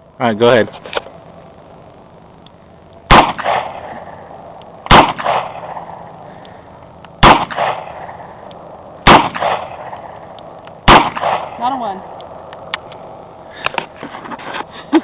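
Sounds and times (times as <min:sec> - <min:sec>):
revolver shots: 0:03.1 - 0:04.2, 0:04.9 - 0:06.1, 0:07.2 - 0:08.2, 0:09.0 - 0:11.6
gunshot echo: 0:03.1 - 0:04.3, 0:04.9 - 0:06.1, 0:07.2 - 0:08.3, 0:09.0 - 0:11.9.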